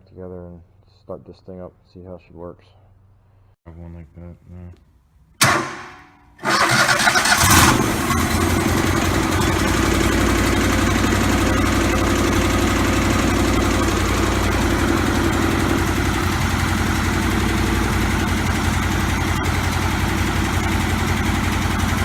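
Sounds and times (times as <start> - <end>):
engine starting and running: 5.4 - 22.0.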